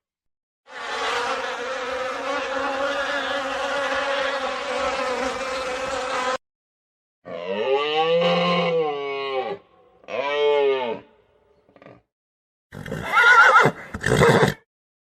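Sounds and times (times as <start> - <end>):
horse neighing: 12.7 - 14.6.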